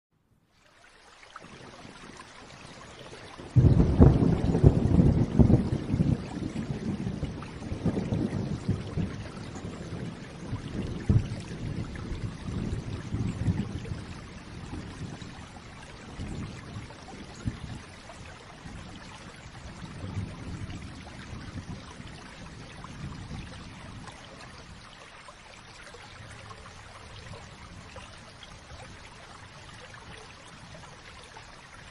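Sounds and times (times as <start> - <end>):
steady rain: 0.4 - 31.9
low thunder rumble: 3.6 - 24.8.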